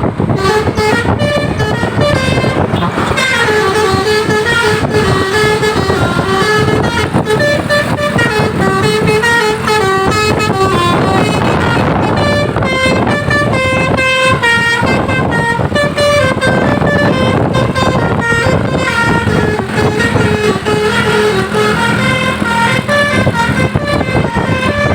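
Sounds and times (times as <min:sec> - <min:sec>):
rush of noise: 0:00.0 - 0:16.6
bus engine noise: 0:00.0 - 0:24.9
musical air horns: 0:00.0 - 0:24.9.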